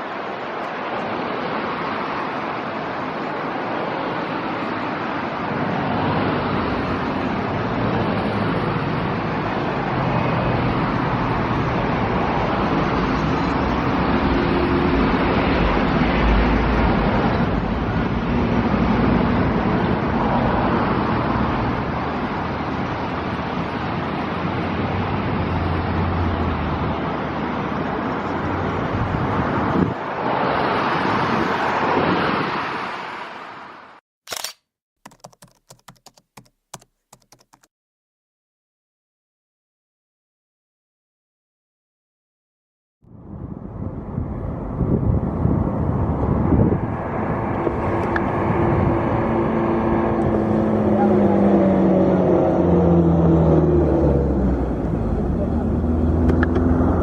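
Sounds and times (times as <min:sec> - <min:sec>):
wind on microphone: 0:00.0 - 0:32.9, 0:43.1 - 0:57.0
distant jet engines: 0:43.1 - 0:57.0.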